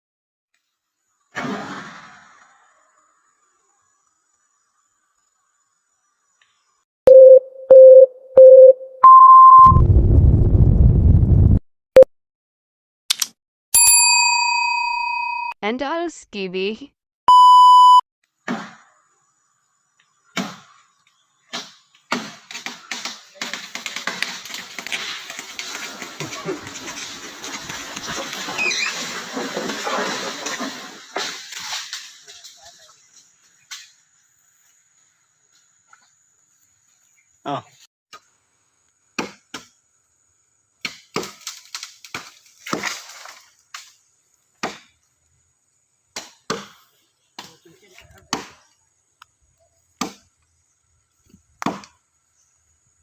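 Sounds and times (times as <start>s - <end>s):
axe chopping wood: 21.5s - 25.1s, 39.2s - 39.7s, 40.8s - 43.1s, 44.6s - 45.0s, 46.1s - 46.8s, 48.3s - 48.6s, 50.0s - 50.3s, 51.6s - 52.0s.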